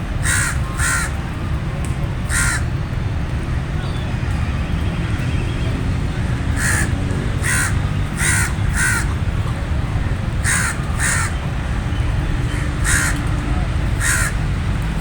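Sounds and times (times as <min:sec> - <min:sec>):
raven cawing: 0:00.2 - 0:01.2, 0:02.3 - 0:02.7, 0:06.5 - 0:09.2, 0:10.4 - 0:11.8, 0:12.4 - 0:13.4, 0:14.0 - 0:14.5.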